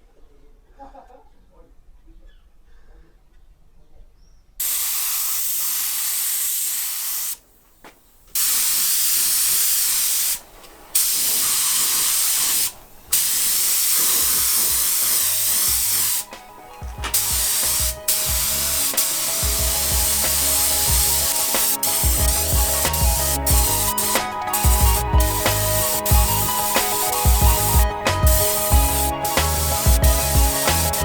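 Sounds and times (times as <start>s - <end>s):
paint spray hissing: 4.6s - 7.4s, 8.3s - 16.4s, 17.1s - 31.0s.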